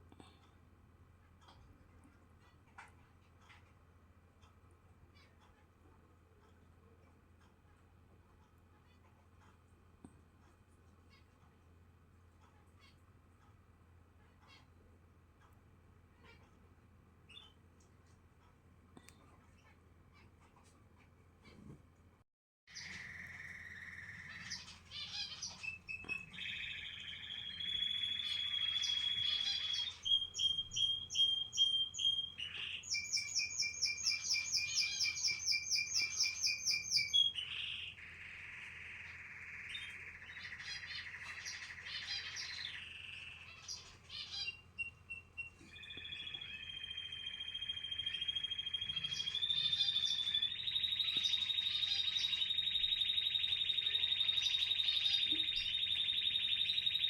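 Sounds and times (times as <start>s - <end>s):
canary singing trills: 17.2s - 17.7s, 22.7s - 57.0s.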